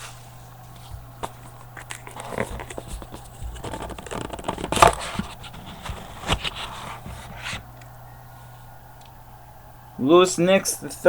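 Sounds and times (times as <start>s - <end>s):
cardboard and wrapper rustling: 0.7s - 7.8s.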